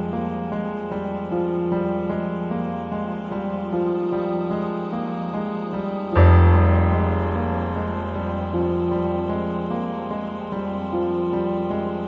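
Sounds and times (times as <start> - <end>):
sustained keyboard notes: 2.1 - 12.0
low drone: 3.6 - 12.0.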